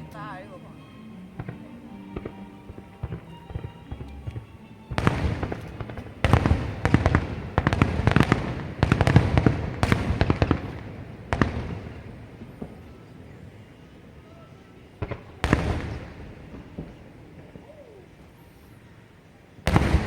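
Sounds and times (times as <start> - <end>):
fireworks bangs and crackling: 1.4 - 18.9, 19.6 - 20.0.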